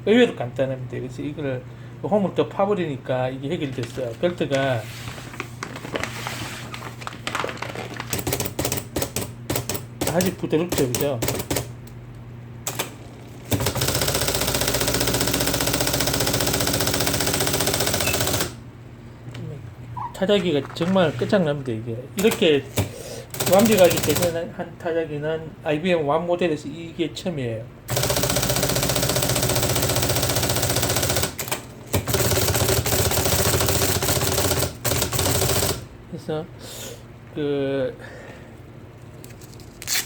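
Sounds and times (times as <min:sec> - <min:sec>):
electric typewriter clattering: 0:07.0 - 0:11.8, 0:12.6 - 0:18.6, 0:22.2 - 0:24.4, 0:27.9 - 0:35.9
typewriter motor hum: 0:08.1 - 0:12.0, 0:12.6 - 0:18.6, 0:22.2 - 0:24.4, 0:27.9 - 0:35.9.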